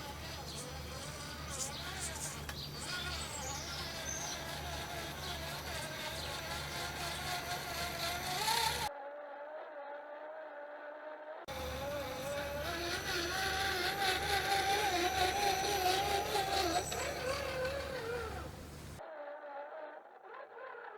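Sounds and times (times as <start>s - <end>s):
electric motor whining: 0.0s - 8.9s, 11.5s - 19.0s.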